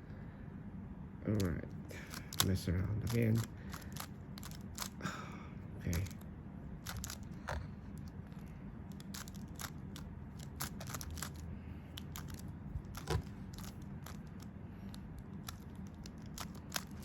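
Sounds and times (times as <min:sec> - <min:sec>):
puzzle cube layers clicking: 0:15.4 - 0:17.0.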